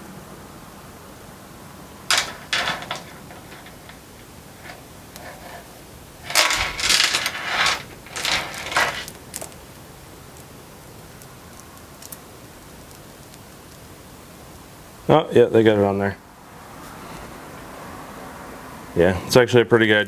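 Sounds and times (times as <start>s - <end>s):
metal chain rattling: 2.1s - 9.2s.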